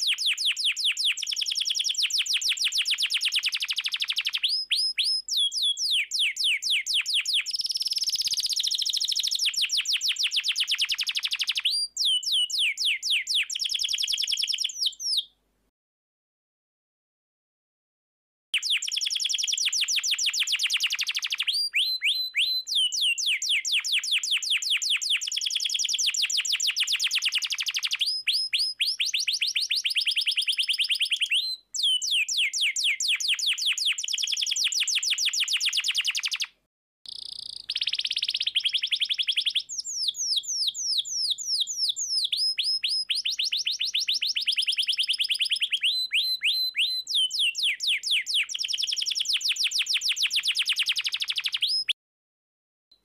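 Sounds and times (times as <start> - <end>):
canary singing trills: 0.0 - 15.3, 18.6 - 36.5, 37.1 - 52.0.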